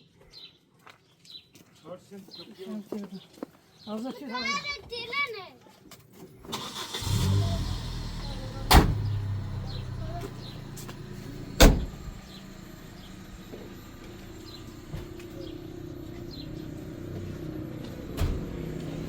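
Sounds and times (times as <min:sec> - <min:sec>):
car doors shutting: 0:06.5 - 0:13.9, 0:14.6 - 0:15.7, 0:17.9 - 0:19.0
car engine running: 0:06.6 - 0:19.0.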